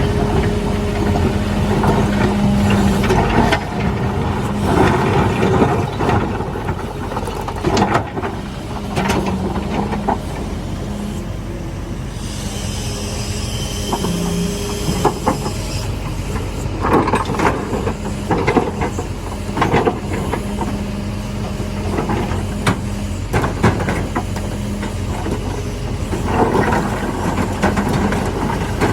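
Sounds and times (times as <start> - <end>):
excavator engine running: 0.0 - 28.9
high hydraulic whine: 8.8 - 28.6.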